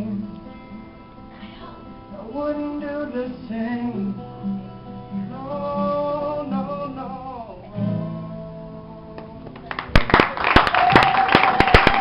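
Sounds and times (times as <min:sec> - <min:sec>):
acoustic guitar chord: 0:00.0 - 0:09.6
audience applause and cheering: 0:09.6 - 0:12.0.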